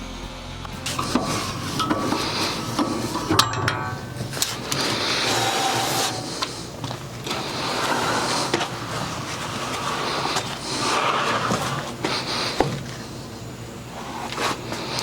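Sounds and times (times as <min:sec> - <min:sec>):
short metallic rings: 0:00.9 - 0:04.4.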